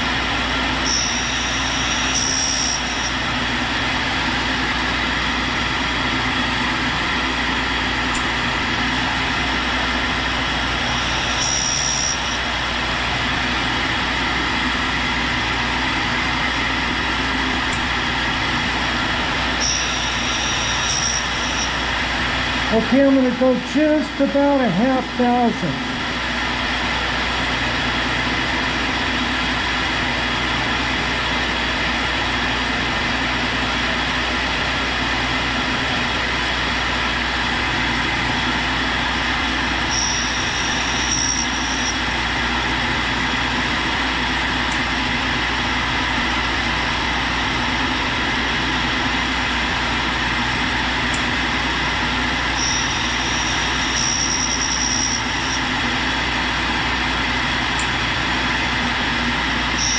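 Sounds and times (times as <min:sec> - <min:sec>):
tool grinder running: 0:00.0 - 0:23.3, 0:38.0 - 0:47.8, 0:48.5 - 0:57.2
high-pitched tone: 0:00.8 - 0:03.2, 0:10.8 - 0:12.6, 0:19.6 - 0:22.1, 0:39.9 - 0:42.1, 0:52.5 - 0:55.9
air spindle hissing: 0:00.8 - 0:03.3, 0:10.4 - 0:13.0, 0:19.6 - 0:22.7, 0:39.8 - 0:42.2, 0:52.4 - 0:55.8.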